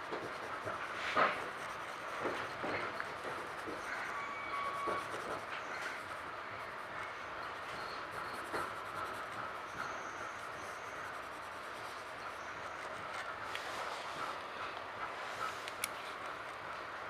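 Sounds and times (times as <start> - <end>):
pencil scratching on paper: 0.0 - 6.9, 8.1 - 13.3
train running noise: 0.0 - 17.0.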